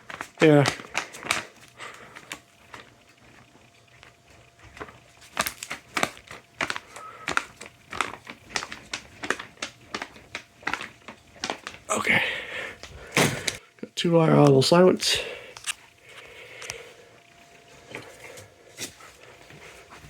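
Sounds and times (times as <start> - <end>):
irregular clicks and taps: 4.8 - 11.9.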